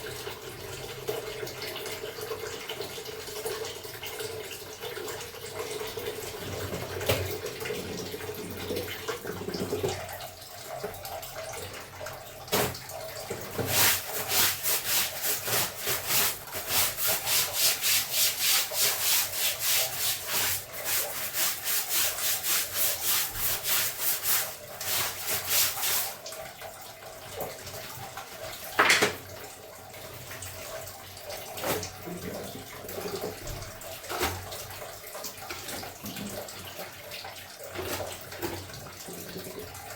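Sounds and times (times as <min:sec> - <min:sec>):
clothes being scrubbed by hand: 0:12.5 - 0:26.3.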